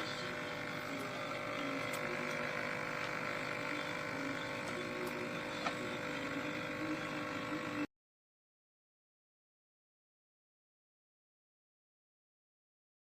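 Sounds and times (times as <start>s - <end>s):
coffee machine humming: 0.0s - 7.9s.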